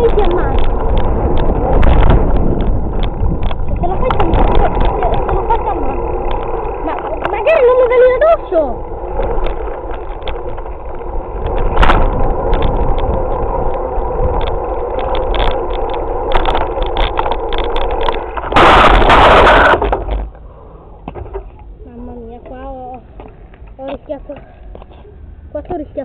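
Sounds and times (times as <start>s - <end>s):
bike knocks and rattles: 0.0s - 8.3s, 9.1s - 20.3s
tyre rumble: 0.0s - 21.8s
wind noise: 0.0s - 24.1s
loud harsh rush: 3.8s - 20.3s.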